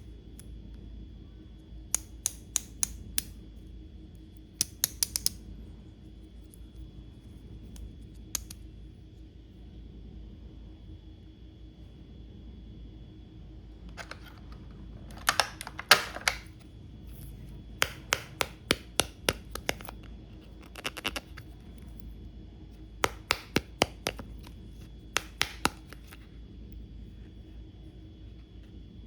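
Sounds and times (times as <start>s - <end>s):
faint steady hum: 0.0s - 29.0s
toy pieces clicking and tapping: 4.6s - 5.4s, 14.0s - 16.4s, 17.8s - 20.0s, 23.0s - 24.5s, 25.1s - 26.2s.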